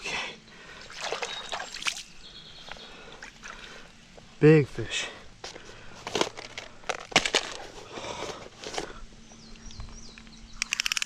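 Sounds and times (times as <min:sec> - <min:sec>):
bird chirping faintly: 0:00.4 - 0:03.4.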